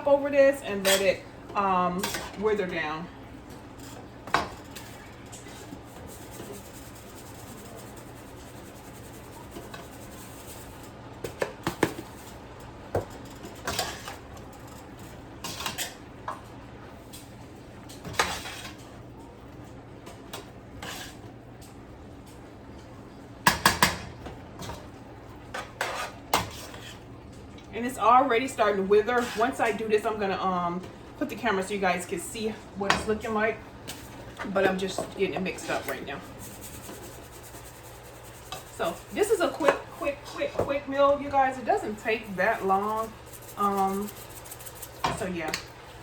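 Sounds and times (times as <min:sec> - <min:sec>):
utensil scraping cooking pot: 0:00.5 - 0:02.9, 0:18.0 - 0:18.9, 0:20.8 - 0:21.3, 0:25.5 - 0:27.1, 0:27.9 - 0:30.1, 0:33.0 - 0:45.6.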